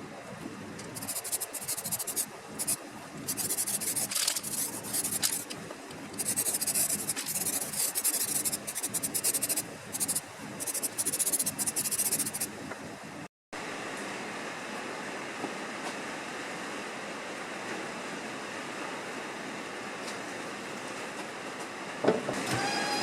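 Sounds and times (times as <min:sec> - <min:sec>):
hand tool rasping on hard surface: 0:06.2 - 0:12.4.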